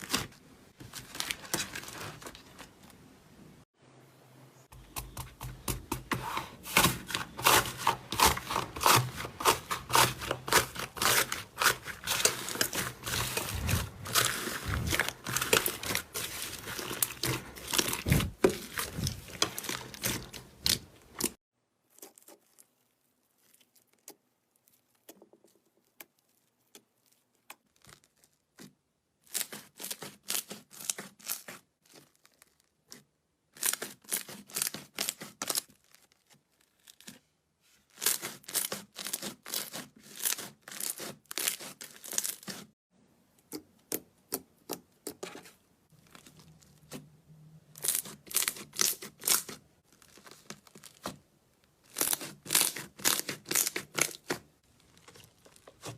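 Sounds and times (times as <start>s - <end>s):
slime crackling and popping: 47.8s - 55.9s.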